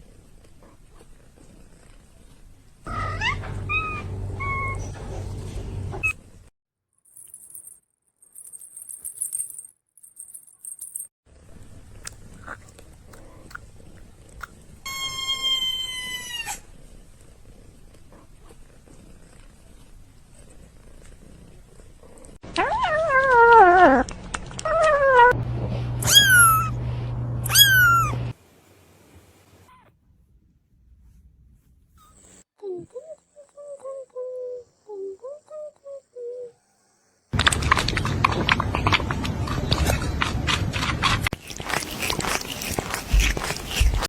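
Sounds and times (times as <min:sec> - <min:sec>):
kittens mewing: 0:02.9 - 0:06.2, 0:26.0 - 0:26.7, 0:27.4 - 0:28.3, 0:41.4 - 0:44.0.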